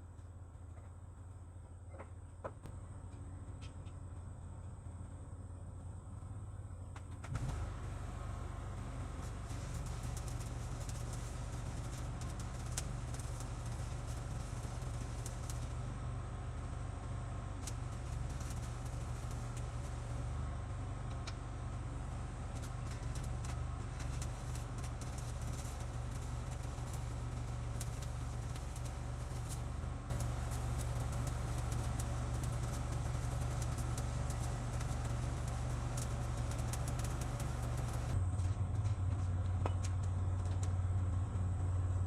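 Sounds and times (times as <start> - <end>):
engine idling: 7.4 - 42.0
sharp clicks and crackles: 9.1 - 15.9, 17.6 - 20.4, 21.0 - 21.5, 22.4 - 40.8.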